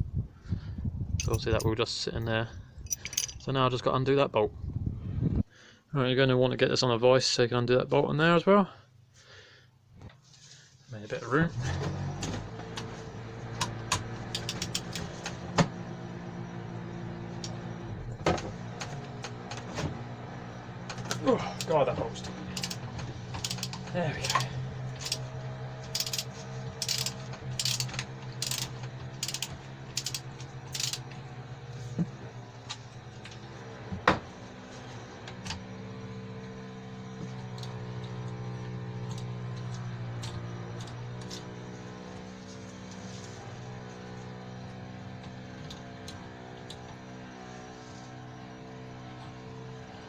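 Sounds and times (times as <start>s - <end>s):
hand tools clinking on metal: 2.9s - 3.5s
steady low hum: 12.2s - 50.0s
hand tools clicking and knocking: 14.3s - 15.1s, 21.0s - 25.2s, 25.8s - 31.1s.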